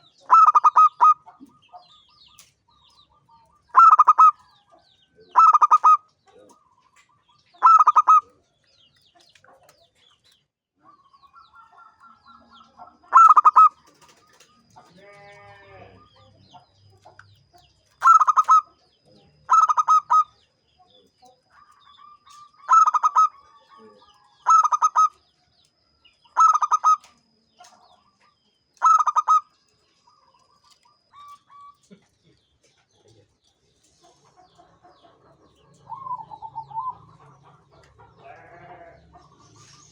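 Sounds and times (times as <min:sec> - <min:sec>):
dove cooing: 0:00.0 - 0:01.6, 0:03.2 - 0:04.7, 0:05.3 - 0:06.6, 0:07.6 - 0:08.4, 0:13.1 - 0:16.6, 0:18.0 - 0:20.4, 0:21.6 - 0:25.2, 0:26.4 - 0:27.2, 0:28.8 - 0:29.6, 0:35.6 - 0:37.5.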